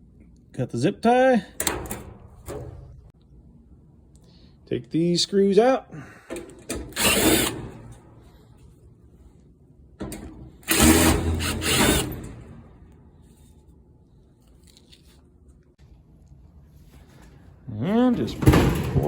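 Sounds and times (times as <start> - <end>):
power drill unscrewing: 10.7 - 12.3.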